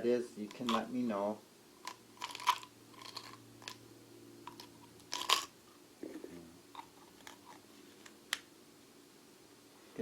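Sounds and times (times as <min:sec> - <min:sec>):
faint steady hum: 0:00.0 - 0:10.0
packet crinkling: 0:00.5 - 0:00.9, 0:01.8 - 0:03.8, 0:04.5 - 0:05.5
small metal parts clicking: 0:00.5 - 0:00.9, 0:01.8 - 0:03.8, 0:04.5 - 0:05.5.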